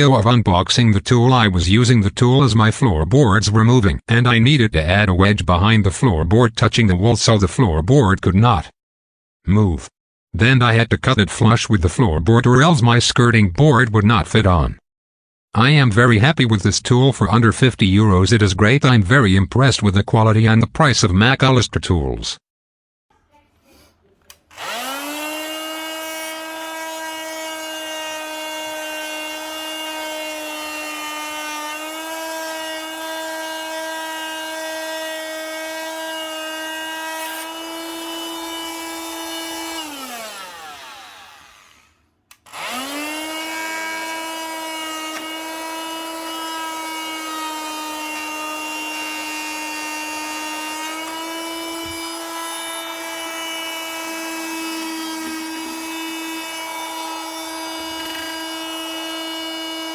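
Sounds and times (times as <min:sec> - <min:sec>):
multi-tool high-pitched whine: 0:24.3 - 0:59.9.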